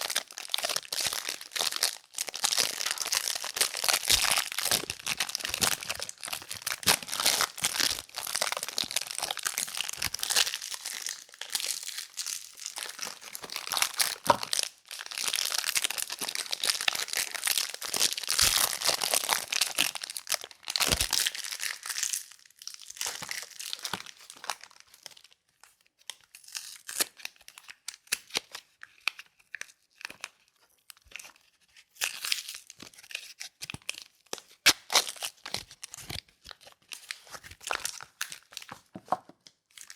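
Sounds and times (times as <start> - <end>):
packaging wrappers crinkling: 0.0 - 25.3.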